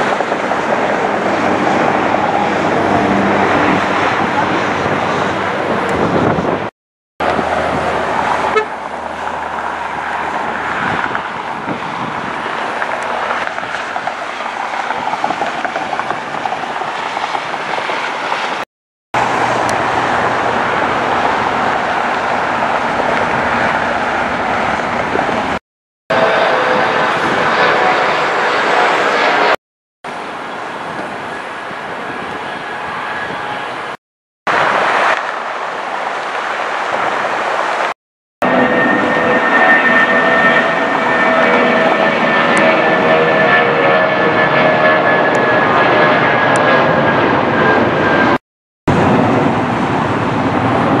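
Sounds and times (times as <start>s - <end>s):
jet engine roar: 0.0s - 51.0s
whining tones: 38.4s - 48.4s.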